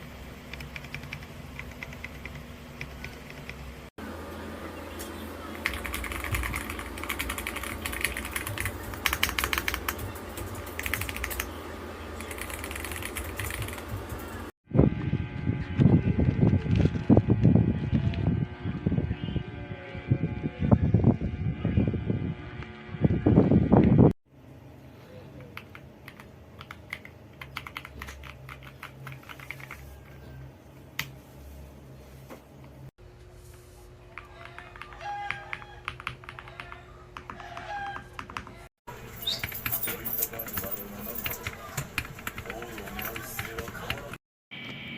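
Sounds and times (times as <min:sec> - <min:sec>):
mechanical keyboard typing: 0:00.5 - 0:03.6, 0:05.6 - 0:11.6, 0:12.2 - 0:14.3, 0:25.5 - 0:29.8, 0:35.5 - 0:37.3, 0:39.2 - 0:44.2.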